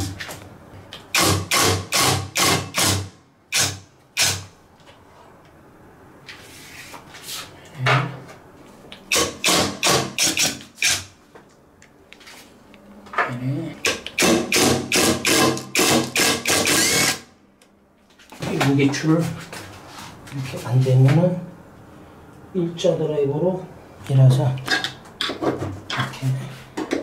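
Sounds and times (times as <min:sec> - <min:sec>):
socket ratchet wrench strokes: 0:09.1 - 0:11.1, 0:13.8 - 0:17.2.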